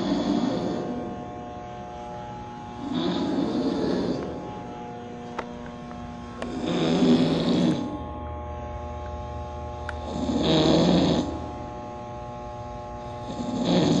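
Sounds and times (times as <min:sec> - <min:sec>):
man snoring: 0:00.0 - 0:01.2, 0:02.7 - 0:04.7, 0:06.4 - 0:08.0, 0:10.0 - 0:11.5, 0:13.0 - 0:14.0
low hum: 0:00.0 - 0:10.1.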